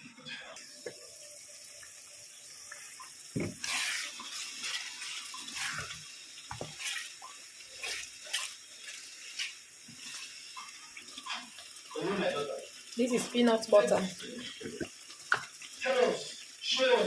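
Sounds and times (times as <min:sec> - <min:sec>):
tap water splashing: 0:02.7 - 0:04.3, 0:06.5 - 0:07.4, 0:14.6 - 0:15.6.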